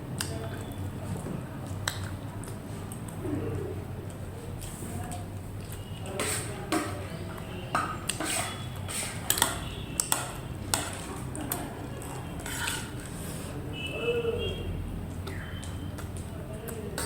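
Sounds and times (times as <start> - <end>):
cutlery clinking against a dish: 6.1 - 7.2, 7.8 - 11.6, 12.4 - 13.1.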